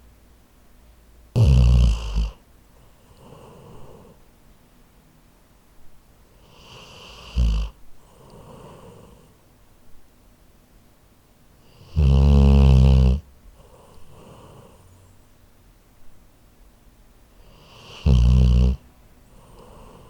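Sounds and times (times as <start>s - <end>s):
dog snoring: 1.4s - 4.2s, 6.4s - 9.4s, 11.6s - 14.8s, 17.4s - 20.0s.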